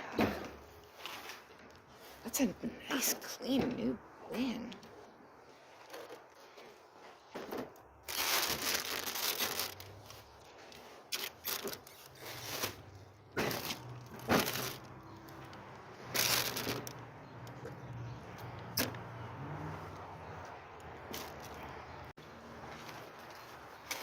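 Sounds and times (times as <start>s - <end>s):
plastic packaging rustling: 7.9s - 14.9s, 16.1s - 17.0s.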